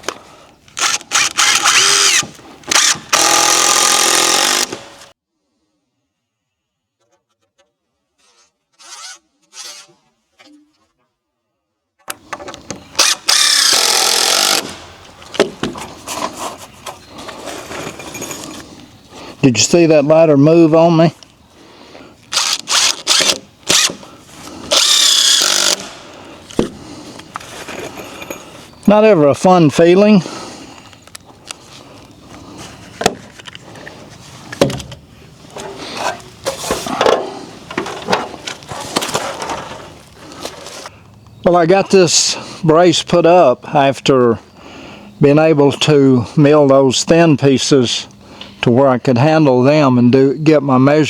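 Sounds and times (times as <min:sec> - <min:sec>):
power drill driving screw into wood: 0:00.8 - 0:05.1, 0:13.0 - 0:14.8, 0:22.3 - 0:24.0, 0:24.7 - 0:26.0
scraping and rustling handling noise: 0:15.0 - 0:19.4, 0:26.4 - 0:28.9, 0:30.7 - 0:40.9.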